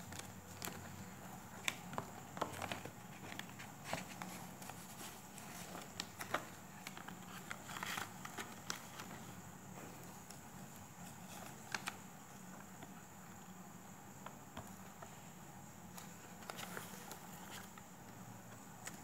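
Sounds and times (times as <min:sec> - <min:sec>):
paper rustle: 0:00.0 - 0:09.4, 0:10.0 - 0:12.7, 0:15.9 - 0:17.9.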